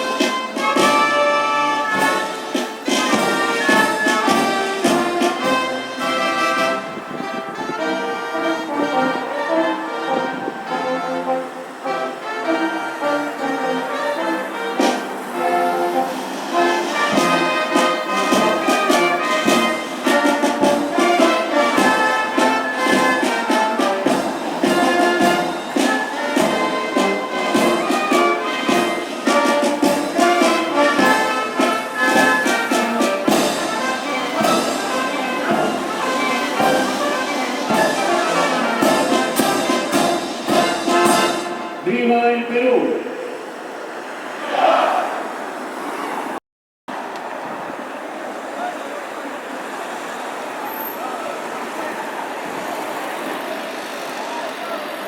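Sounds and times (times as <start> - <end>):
drum beats: 0.0 - 6.1, 14.4 - 42.0
brass band playing: 0.0 - 43.6.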